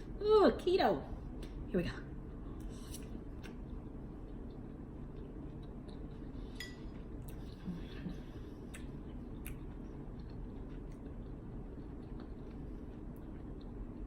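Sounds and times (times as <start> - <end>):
steady low hum: 0.0 - 14.0
utensil clinking on glass bowl: 6.6 - 6.9.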